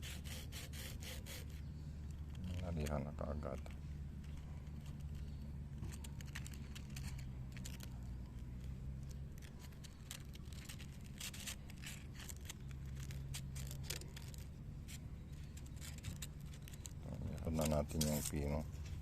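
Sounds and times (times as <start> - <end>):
sandpaper rubbing: 0.0 - 1.6, 9.5 - 18.6.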